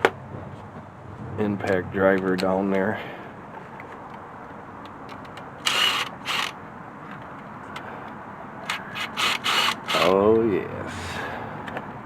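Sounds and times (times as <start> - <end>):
hand ratchet rasping: 5.1 - 6.6, 8.6 - 10.2.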